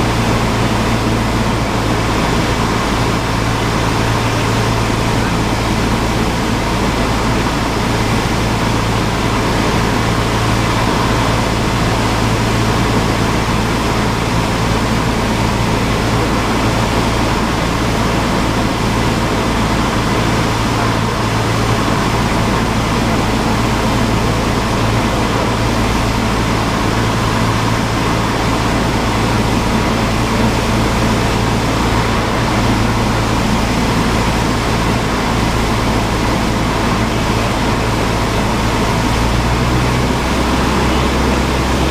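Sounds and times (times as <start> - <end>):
propeller plane engine droning: 0.0 - 41.9.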